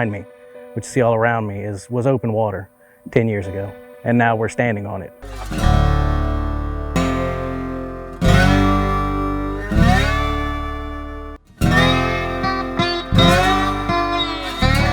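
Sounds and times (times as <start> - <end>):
guitar chords: 5.2 - 14.9.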